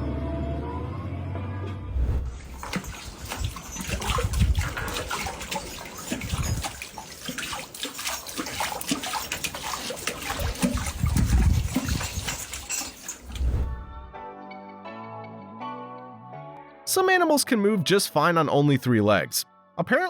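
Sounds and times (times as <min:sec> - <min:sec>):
water splashing and sloshing: 0:01.9 - 0:14.1.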